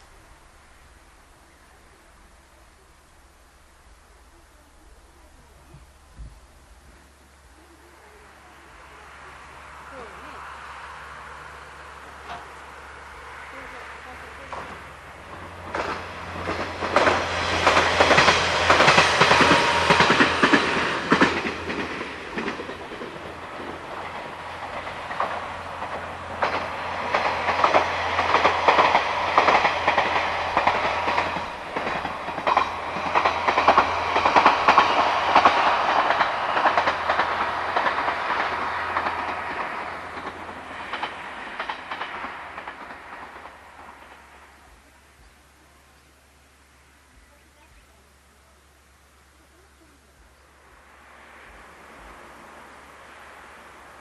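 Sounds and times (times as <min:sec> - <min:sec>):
diesel train passing: 0:00.0 - 0:54.0
wheels clacking over rail joints: 0:11.0 - 0:45.3.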